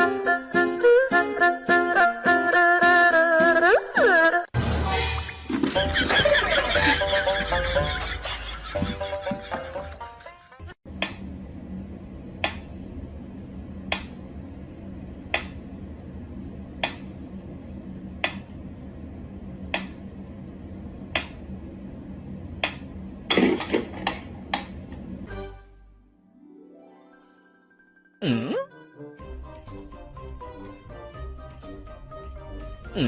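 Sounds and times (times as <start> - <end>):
low hum: 10.9 - 26.1.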